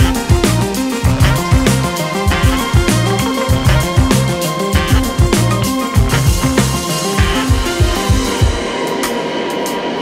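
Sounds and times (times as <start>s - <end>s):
electronic music with drum beat: 0.0s - 10.0s
heavy bass drum hits: 1.1s - 8.7s.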